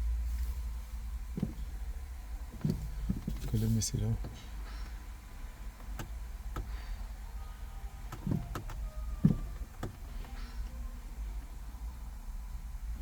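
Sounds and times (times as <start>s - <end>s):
steady low hum: 0.0s - 13.0s
dull knocks: 1.3s - 1.8s, 2.5s - 3.5s, 8.1s - 10.4s.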